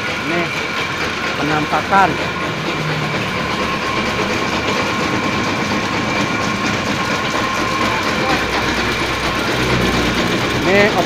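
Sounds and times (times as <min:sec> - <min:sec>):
continuous fast rattle: 0:00.0 - 0:11.0
machine motors humming: 0:00.0 - 0:11.0.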